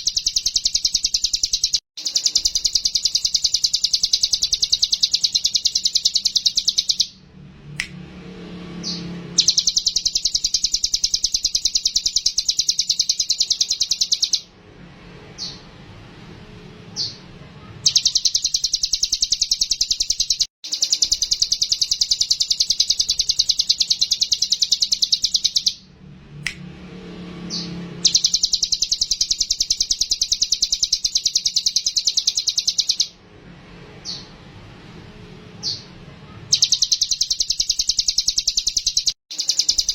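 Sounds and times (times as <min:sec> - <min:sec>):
bird singing rapid high trills: 0:00.0 - 0:07.2, 0:08.7 - 0:14.5, 0:15.3 - 0:15.7, 0:16.9 - 0:25.9, 0:27.4 - 0:33.2, 0:34.0 - 0:34.4, 0:35.6 - 0:39.9.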